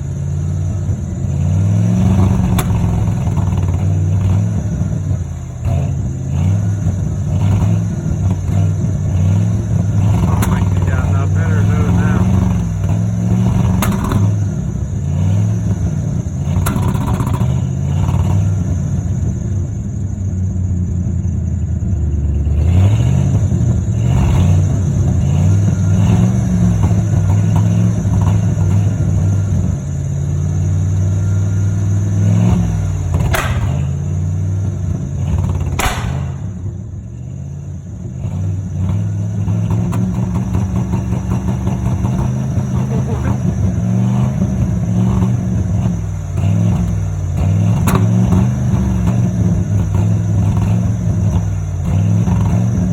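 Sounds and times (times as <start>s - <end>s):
pickup engine revving: 0.0s - 52.9s
sharp clicks: 33.2s - 34.0s, 35.7s - 36.6s.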